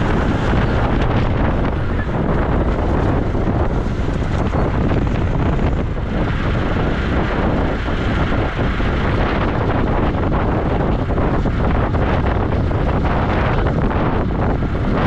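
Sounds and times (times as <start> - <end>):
strong wind buffeting microphone: 0.0 - 15.0.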